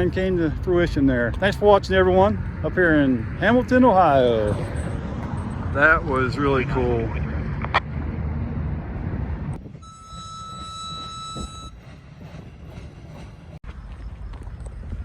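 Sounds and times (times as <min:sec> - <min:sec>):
freight train rumbling past: 0:00.0 - 0:14.3
steady high tone: 0:09.7 - 0:11.8.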